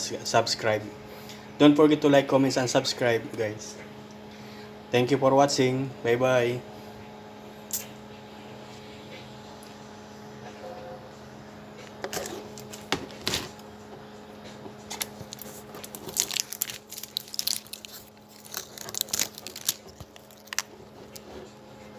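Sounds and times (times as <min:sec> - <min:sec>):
steady low hum: 0:00.0 - 0:21.9
crinkly rustles: 0:14.9 - 0:21.6.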